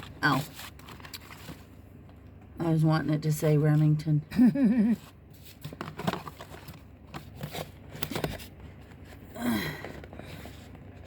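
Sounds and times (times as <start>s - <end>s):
papers rustling and clicking: 0.0s - 2.3s, 5.0s - 11.0s.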